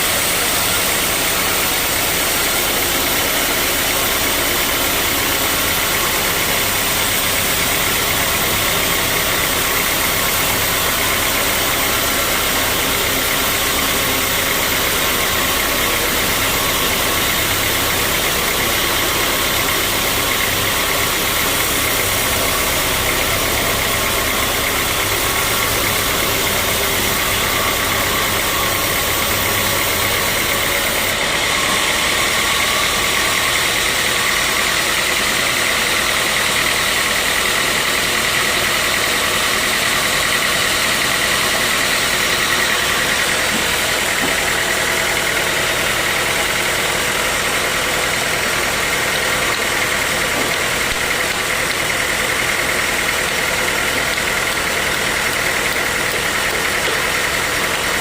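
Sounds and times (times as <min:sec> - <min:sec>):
sawmill saw cutting log: 0:00.0 - 0:58.0.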